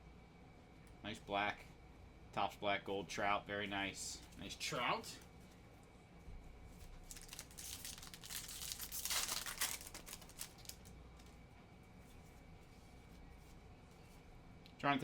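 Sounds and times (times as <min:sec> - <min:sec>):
foil wrapper crinkling and tearing: 0:06.9 - 0:11.0.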